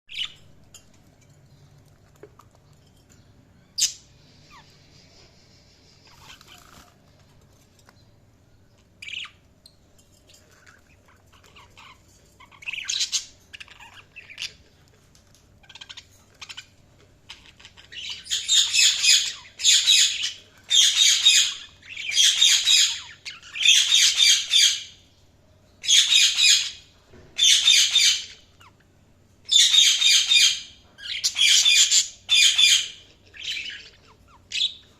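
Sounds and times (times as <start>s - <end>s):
budgerigars chirping: 0.1s - 0.4s, 3.7s - 6.9s, 9.0s - 9.4s, 10.3s - 14.8s, 15.6s - 25.0s, 25.8s - 28.8s, 29.5s - 34.9s
budgerigars squawking harshly: 29.5s - 34.8s.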